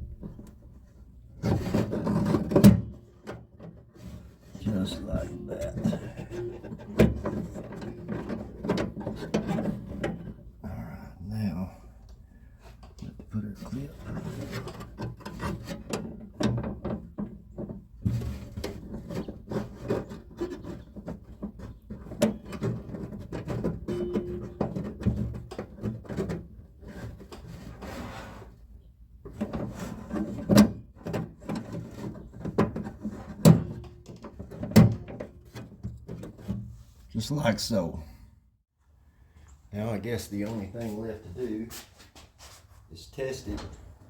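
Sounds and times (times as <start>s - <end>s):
metal clicks and knocks: 5.1s - 10.6s, 14.0s - 27.5s, 29.3s - 36.6s.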